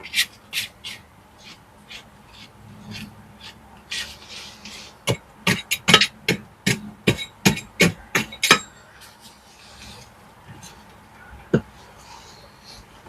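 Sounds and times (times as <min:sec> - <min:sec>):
short scrape: 0:00.0 - 0:05.0
sharp knocks: 0:05.1 - 0:08.7.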